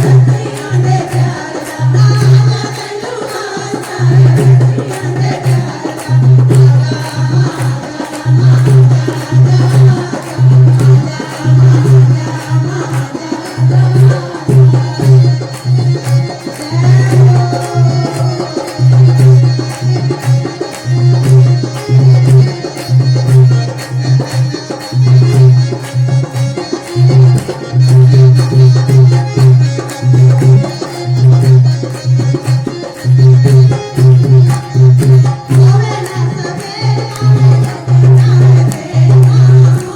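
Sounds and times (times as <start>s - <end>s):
hand drum rhythm: 0.0s - 39.9s
person singing: 16.6s - 19.0s.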